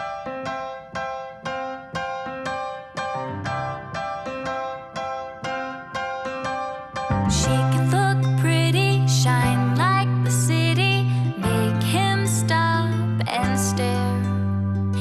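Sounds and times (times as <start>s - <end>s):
keyboard playing gentle notes: 0.0s - 15.0s
music with sustained bass: 7.1s - 15.0s.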